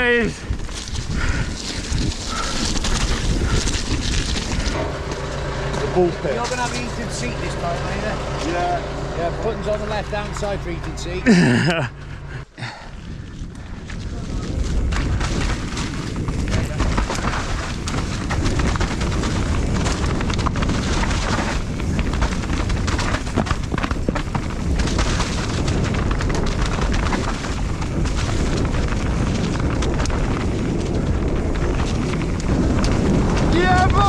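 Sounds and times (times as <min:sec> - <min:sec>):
bike rattling: 0:00.0 - 0:34.0
wind buffeting microphone: 0:00.0 - 0:34.0
sharp knocks from trail: 0:14.5 - 0:33.5.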